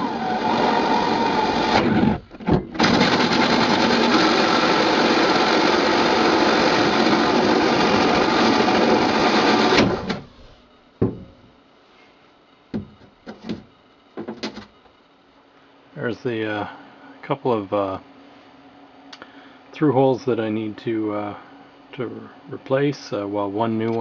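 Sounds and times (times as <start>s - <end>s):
handheld power tool running: 0.0s - 10.2s.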